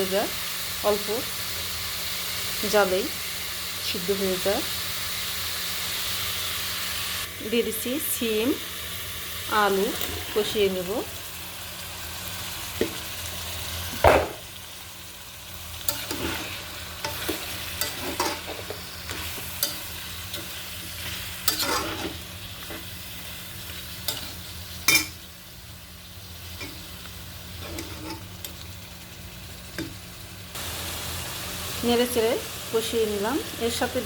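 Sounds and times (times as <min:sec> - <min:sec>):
food sizzling in hot oil: 0:00.0 - 0:34.0
spatula scraping and knocking pan: 0:15.9 - 0:22.9, 0:27.6 - 0:28.3.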